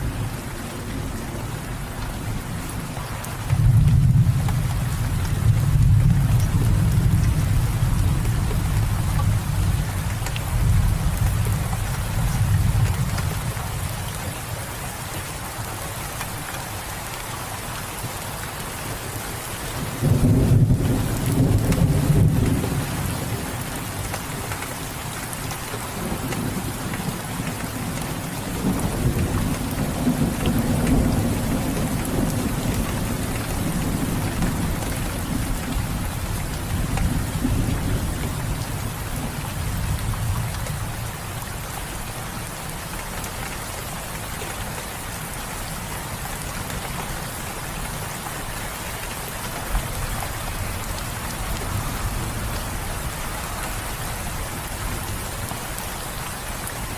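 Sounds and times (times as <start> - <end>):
heavy rain falling: 0.0 - 56.9
low rolling thunder: 19.8 - 23.9, 27.8 - 41.0.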